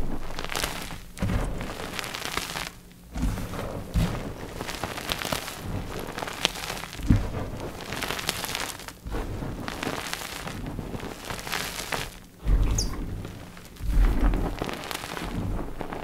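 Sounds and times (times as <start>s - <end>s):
chalk blocks crunching: 0.0s - 16.0s.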